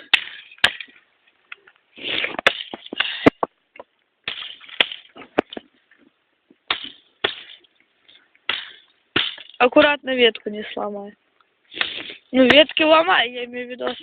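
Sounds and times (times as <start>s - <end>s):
rustling of branches: 0.0s - 14.0s
branches chopped and snapped: 4.2s - 5.7s, 6.6s - 7.7s, 8.4s - 9.6s.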